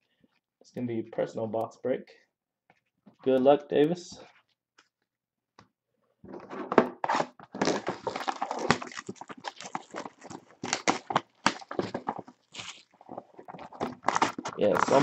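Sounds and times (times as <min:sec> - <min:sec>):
packaging crinkling and tearing: 0:07.1 - 0:15.0.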